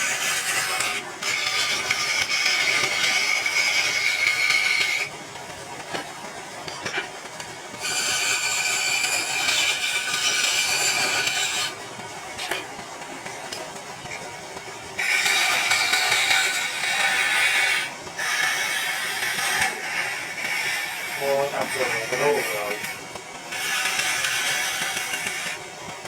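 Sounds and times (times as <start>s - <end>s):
tool running with hissing whine: 0.0s - 26.0s.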